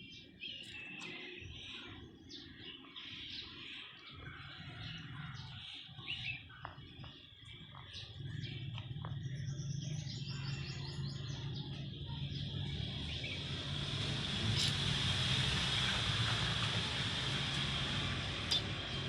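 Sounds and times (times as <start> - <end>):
small birds chirping: 0.0 - 19.0
low steady hum: 7.4 - 19.0
hiss: 12.7 - 19.0.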